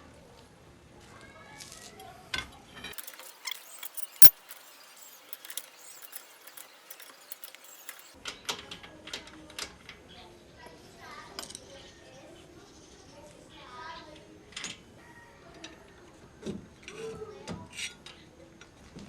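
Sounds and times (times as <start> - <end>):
metal tools clinking: 3.0 - 8.2.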